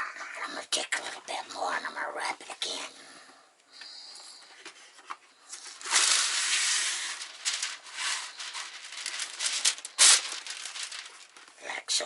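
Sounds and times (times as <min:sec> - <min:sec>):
paper rustling and crinkling: 0:04.5 - 0:11.8.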